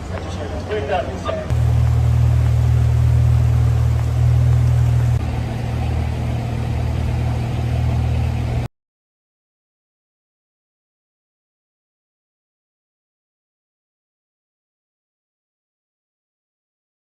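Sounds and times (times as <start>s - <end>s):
engine rumbling: 0.0s - 8.7s.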